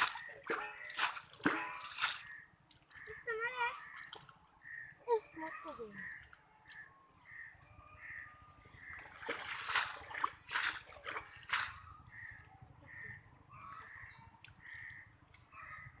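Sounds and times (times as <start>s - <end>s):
hands splashing in muddy water: 0.0s - 2.9s, 8.8s - 12.3s.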